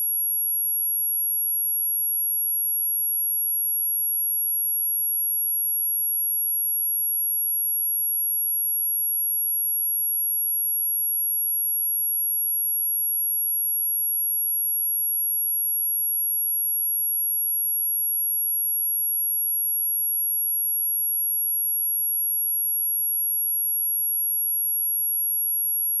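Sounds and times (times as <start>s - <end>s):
high-pitched sine-wave test tone: 0.0s - 26.0s.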